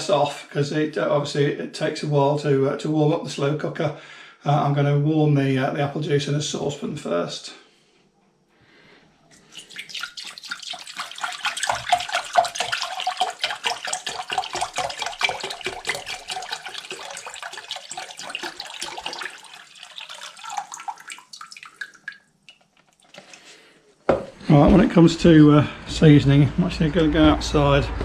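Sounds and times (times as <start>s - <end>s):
juice pouring into a saucepan: 9.4s - 23.7s.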